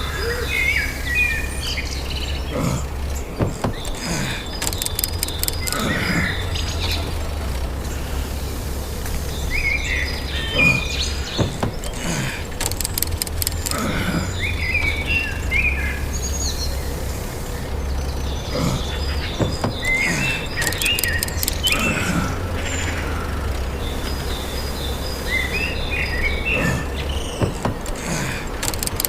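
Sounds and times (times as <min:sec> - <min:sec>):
birds chirping: 0:00.0 - 0:29.0
steady low hum: 0:00.0 - 0:29.0.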